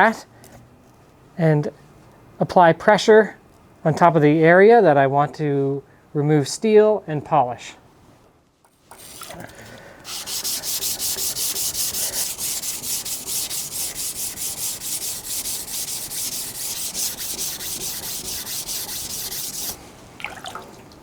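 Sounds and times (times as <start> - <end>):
knife blade grinding on whetstone: 10.1 - 19.8.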